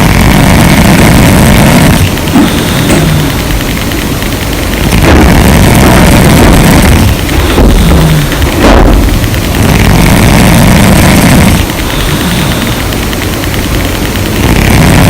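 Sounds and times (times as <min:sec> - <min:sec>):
harsh low snoring: 0:00.0 - 0:03.4, 0:04.9 - 0:12.8.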